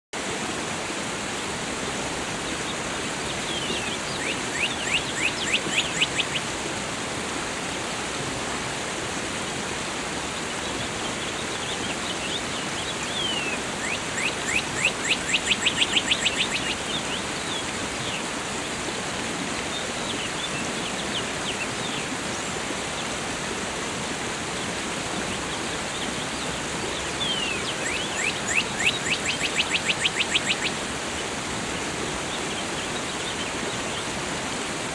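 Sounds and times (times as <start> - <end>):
rush of falling water: 0.2 - 34.9
small songbird singing: 2.6 - 6.5, 10.6 - 18.3, 25.2 - 30.8.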